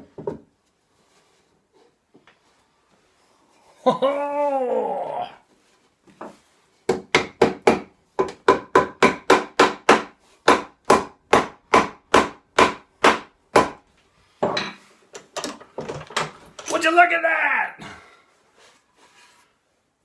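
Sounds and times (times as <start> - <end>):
wood plane scraping strokes: 18.5 - 19.8.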